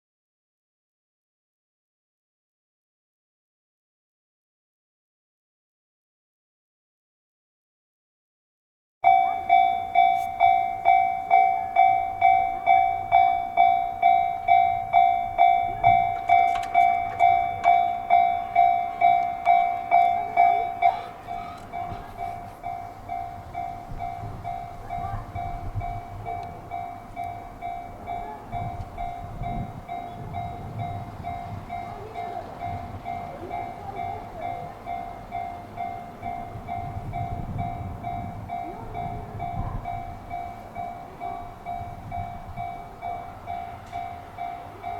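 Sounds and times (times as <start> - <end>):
level crossing alarm bell ringing: 9.0 - 44.9
passing train rumble: 9.0 - 44.9.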